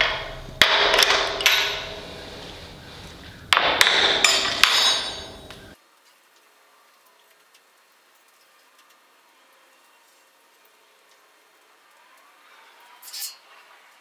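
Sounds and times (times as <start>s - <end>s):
hammer striking steel: 0.0s - 5.8s.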